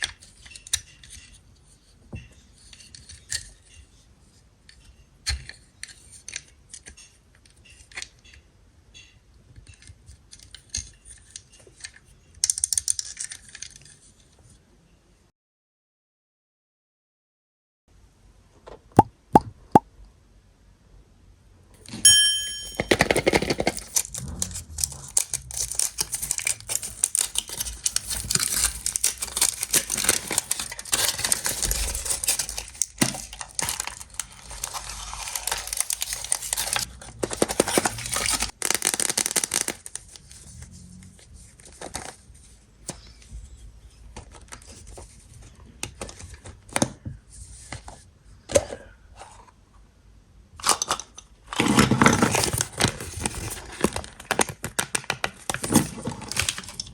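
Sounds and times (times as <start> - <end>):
foil wrapper tearing and crinkling: 23.2 - 40.2.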